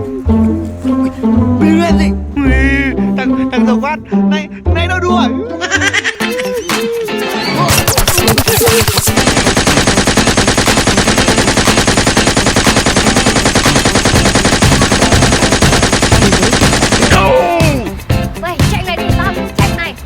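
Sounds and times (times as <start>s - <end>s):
rapid automatic gunfire: 7.7s - 17.2s.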